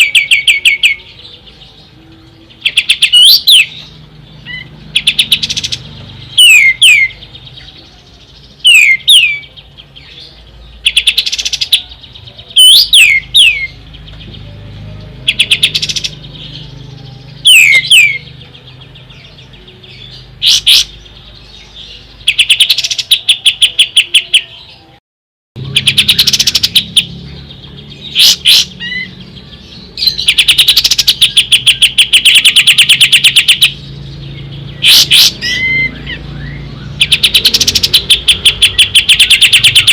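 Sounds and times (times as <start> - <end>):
songbird rattling trills: 2.6 - 7.5, 25.7 - 39.9
songbird whistled notes: 6.3 - 7.3, 12.5 - 13.8, 17.4 - 18.2.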